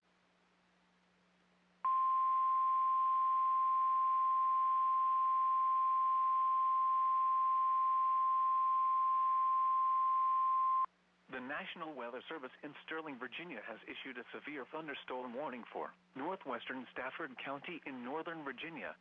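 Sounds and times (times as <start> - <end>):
steady warning alarm beep: 1.9 - 10.9.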